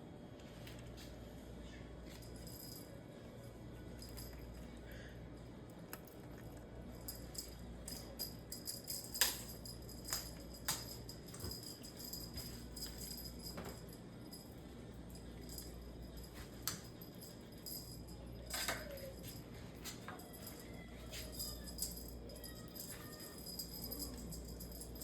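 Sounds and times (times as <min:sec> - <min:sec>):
cat toy bell jingling: 0:02.1 - 0:03.0, 0:03.8 - 0:04.6, 0:06.8 - 0:25.0.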